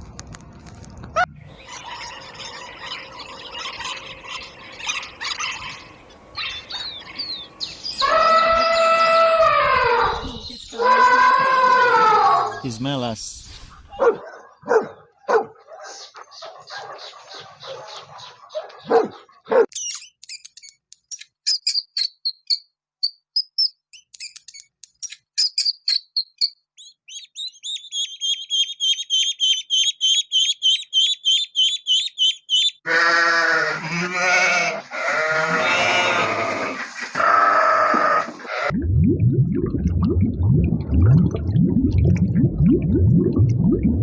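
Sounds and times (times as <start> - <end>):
small bird chirping rapidly: 19.7 - 32.8
loud bleating: 32.8 - 38.7.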